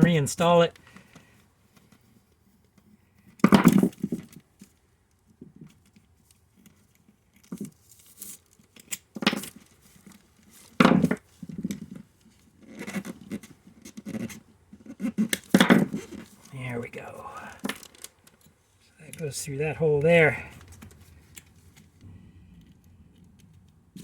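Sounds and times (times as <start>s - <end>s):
rustles and clinks of metal parts: 5.5s - 12.5s, 17.4s - 24.0s.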